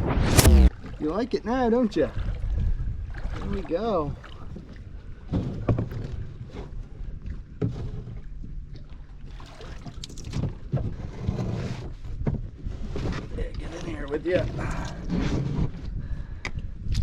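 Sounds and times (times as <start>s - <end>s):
steady low rumble: 0.0s - 1.4s
water splashing: 0.0s - 6.2s, 9.2s - 10.5s.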